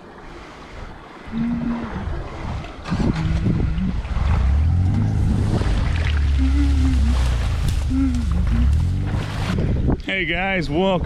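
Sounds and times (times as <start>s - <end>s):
intro music low drone: 2.9s - 9.6s.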